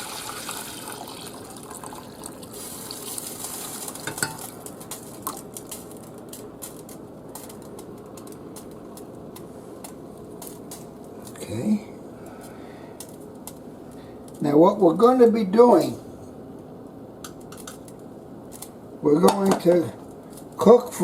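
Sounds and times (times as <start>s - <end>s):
liquid simmering in a pan: 0.0s - 7.0s.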